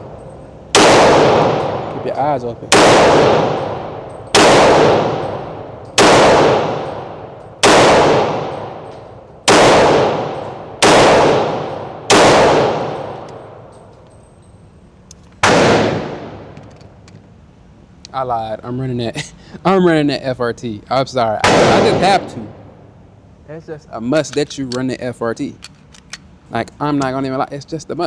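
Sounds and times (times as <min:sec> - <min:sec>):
pistol shots with ringing echo: 0:00.0 - 0:13.8, 0:15.4 - 0:16.6, 0:21.4 - 0:22.7.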